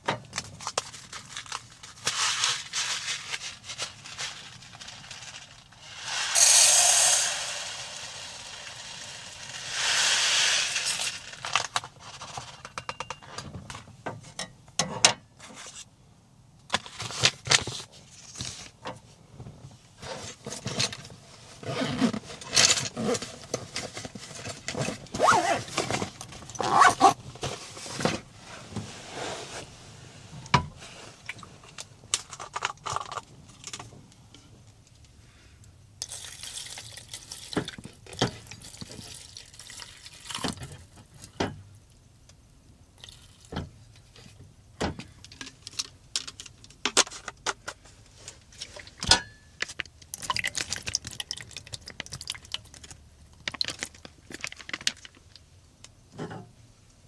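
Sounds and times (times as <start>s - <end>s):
short hissing noises: 5.8s - 11.5s.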